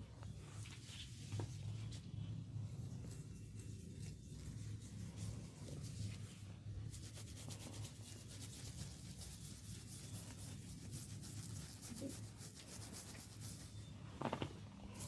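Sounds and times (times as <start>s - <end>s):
hands rubbing through oiled hair: 2.7s - 13.8s.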